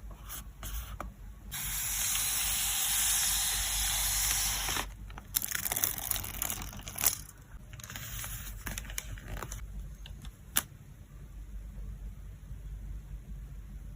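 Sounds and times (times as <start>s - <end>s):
plastic and paper rustling: 4.6s - 9.6s.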